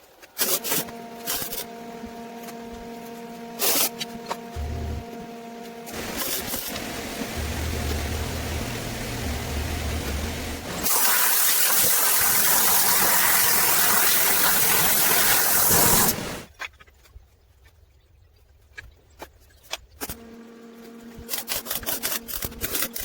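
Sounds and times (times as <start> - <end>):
rushing hiss: 5.9 - 16.5.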